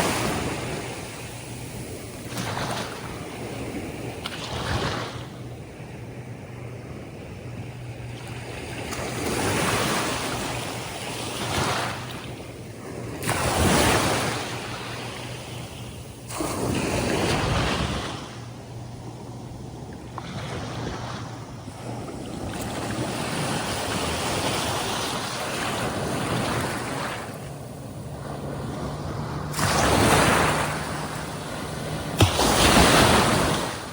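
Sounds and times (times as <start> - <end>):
surf breaking on beach: 0.0 - 1.3, 13.0 - 15.7, 16.3 - 18.4, 20.2 - 33.9.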